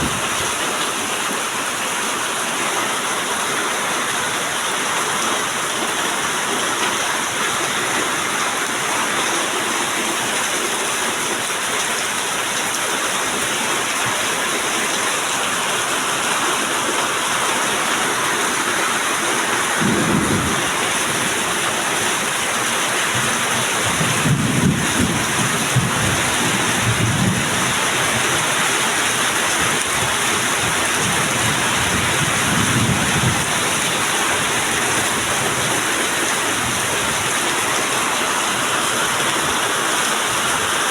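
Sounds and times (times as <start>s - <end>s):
heavy rain pouring: 0.0s - 40.9s
low rolls of thunder: 19.8s - 21.4s, 23.2s - 27.7s.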